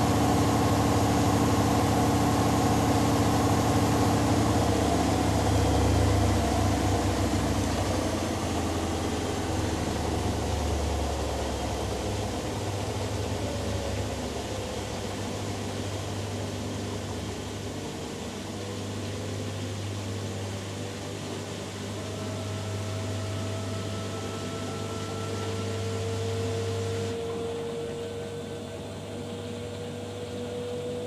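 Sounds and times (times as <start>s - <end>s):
washing machine spinning: 0.0s - 31.0s.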